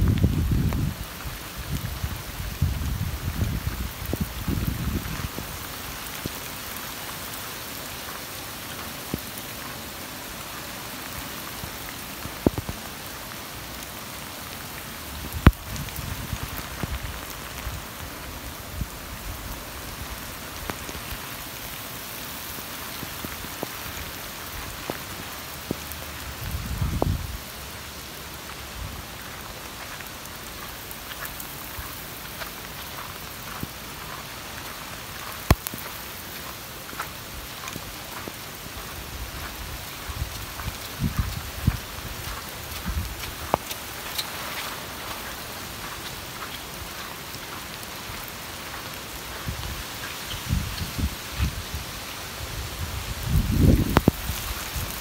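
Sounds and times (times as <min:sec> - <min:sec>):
steady rain: 0:00.0 - 0:55.0
water dripping: 0:29.3 - 0:51.1.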